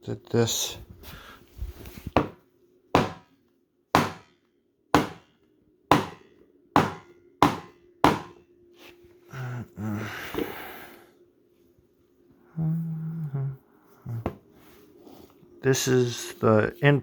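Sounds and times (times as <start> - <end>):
wooden mallet striking metal: 3.0 - 3.2, 4.0 - 4.3, 5.0 - 5.3, 5.9 - 6.2, 6.8 - 8.4.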